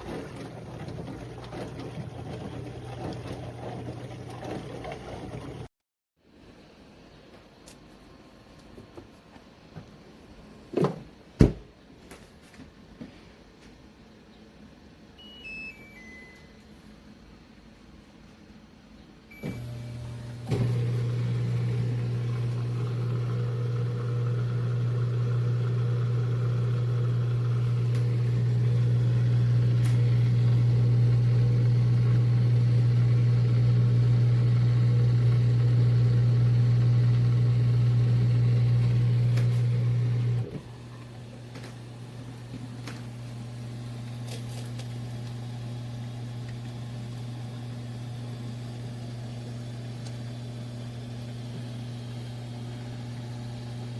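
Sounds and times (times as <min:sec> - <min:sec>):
dishwasher pump humming: 0:00.0 - 0:05.7, 0:19.3 - 0:53.9.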